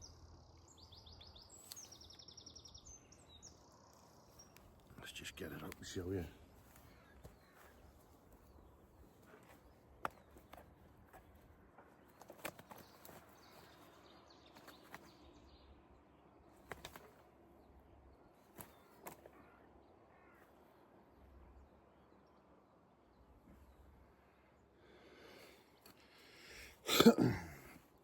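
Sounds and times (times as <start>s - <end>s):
faint bird chirps: 0.0s - 26.8s.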